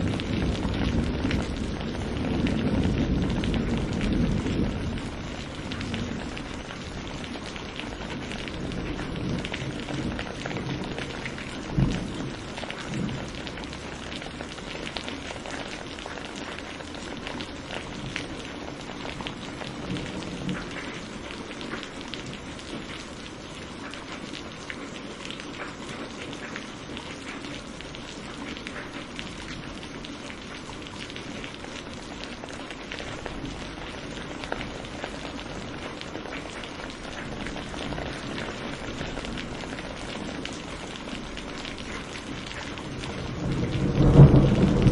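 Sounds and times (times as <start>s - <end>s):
thunder rolling: 0.0s - 7.3s, 42.8s - 44.9s
rain pattering: 0.0s - 44.9s
loud thunder clap: 43.0s - 44.9s.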